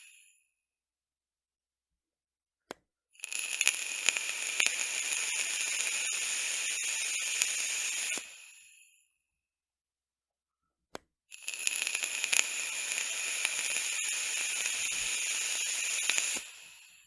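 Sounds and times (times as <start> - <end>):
vape coil crackling hiss: 3.2 - 8.6, 11.3 - 17.0.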